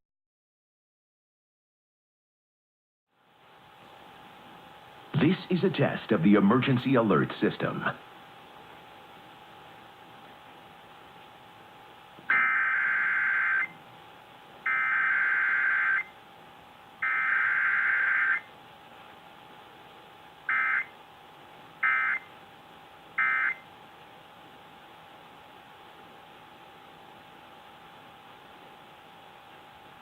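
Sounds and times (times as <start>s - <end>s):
screechy digital data bursts: 12.3s - 13.7s, 14.7s - 16.1s, 17.0s - 18.5s, 20.5s - 20.9s.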